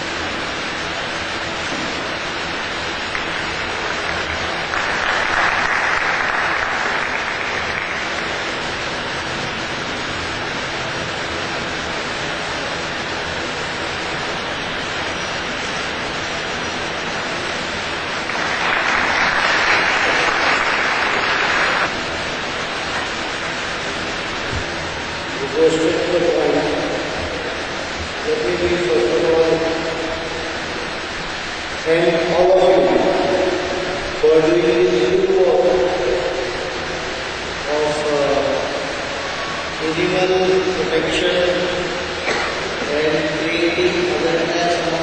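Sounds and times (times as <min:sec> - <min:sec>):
room noise hiss: 0:00.0 - 0:45.0
audience applauding: 0:03.1 - 0:08.4, 0:18.2 - 0:21.9.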